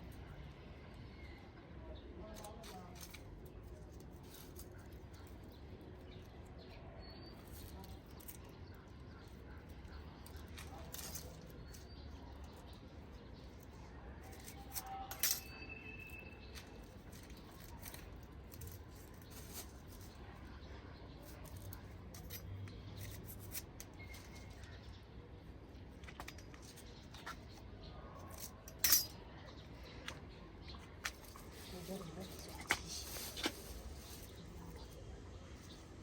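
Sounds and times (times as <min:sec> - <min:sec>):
faint high chirp: 0:14.4 - 0:17.9, 0:23.9 - 0:25.1.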